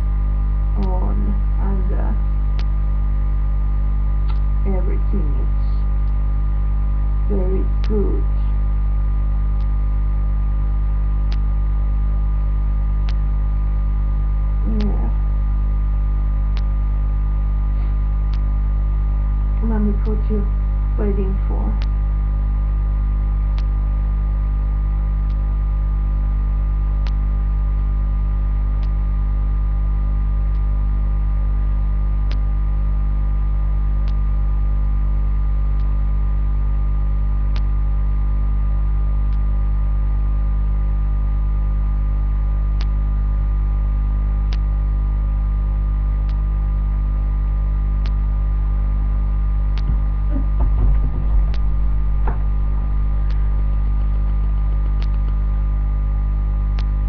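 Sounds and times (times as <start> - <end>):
electrical mains hum: 0.0 - 57.0
faint sharp tick: 42.8 - 43.0, 48.0 - 48.2
low bumps: 49.8 - 55.3.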